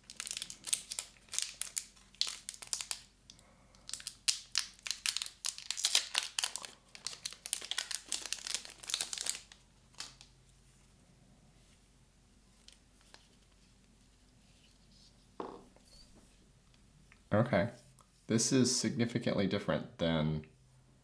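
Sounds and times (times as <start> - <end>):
packaging tearing: 0.0 - 3.1, 3.9 - 10.3
packaging crinkling: 0.0 - 10.3.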